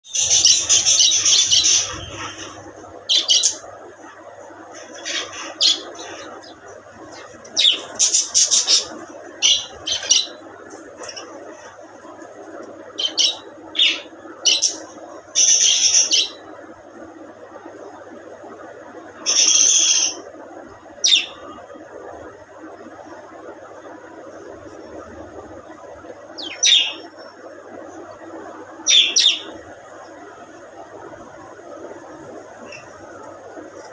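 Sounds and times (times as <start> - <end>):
low background hum: 0.0 - 33.9
budgies chirping and squawking: 0.1 - 3.6, 4.7 - 11.7, 13.0 - 16.4, 26.4 - 27.3, 28.8 - 29.6.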